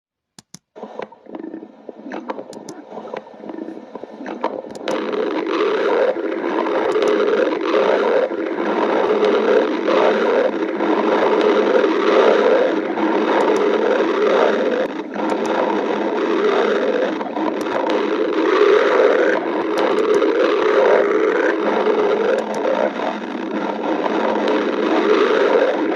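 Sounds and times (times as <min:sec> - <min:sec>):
stomach growling and gurgling: 0:00.8 - 0:25.9.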